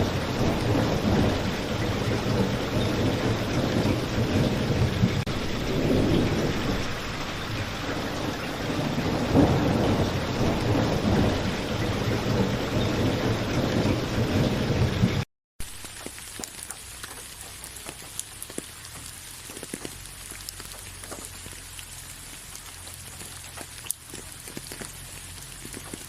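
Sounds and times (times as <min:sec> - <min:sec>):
deep thunder rumble: 0:00.0 - 0:15.2
heavy rain: 0:00.0 - 0:26.0
raindrops clicking on a surface: 0:00.0 - 0:26.0.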